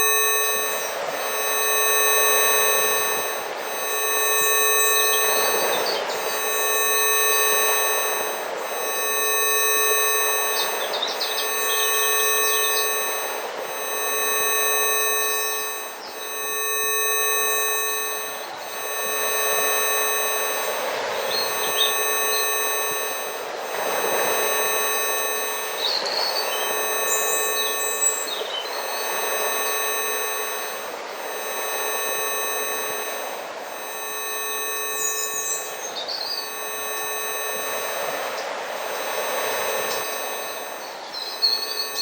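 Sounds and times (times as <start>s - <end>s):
steady pure tones: 0.0s - 42.0s
bird chirps: 5.1s - 6.4s, 10.4s - 13.0s, 21.2s - 22.5s, 25.7s - 29.4s, 35.0s - 36.5s, 40.7s - 42.0s.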